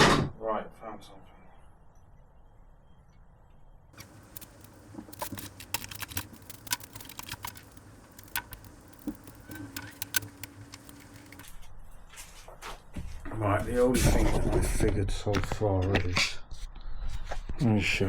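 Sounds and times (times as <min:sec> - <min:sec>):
small parts clicking and clinking: 0:04.0 - 0:11.4
faint steady hum: 0:04.0 - 0:11.5.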